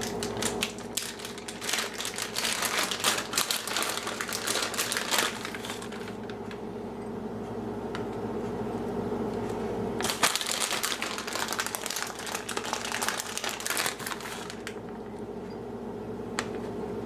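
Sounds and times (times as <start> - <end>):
packaging crinkling and rustling: 0.0 - 6.6, 10.0 - 15.0
steady low hum: 0.0 - 17.0.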